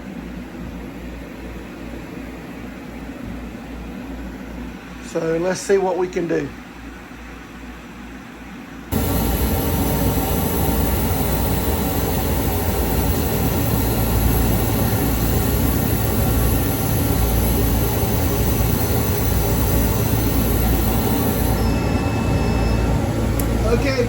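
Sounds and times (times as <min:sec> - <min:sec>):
whirring fans and air pump: 0:00.0 - 0:24.0.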